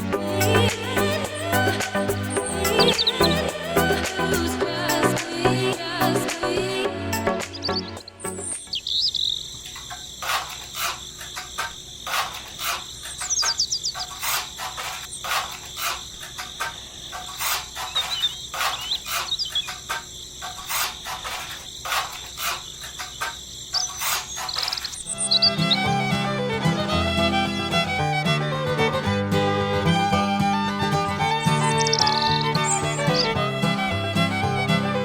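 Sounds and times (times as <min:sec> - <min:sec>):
crickets chirring: 0:00.0 - 0:04.6, 0:08.0 - 0:25.8, 0:31.2 - 0:34.3
music: 0:00.0 - 0:08.5, 0:25.1 - 0:35.0
bird chirps: 0:01.0 - 0:04.5, 0:07.6 - 0:09.6, 0:12.9 - 0:14.2, 0:17.2 - 0:20.4, 0:22.3 - 0:25.9, 0:31.2 - 0:33.4.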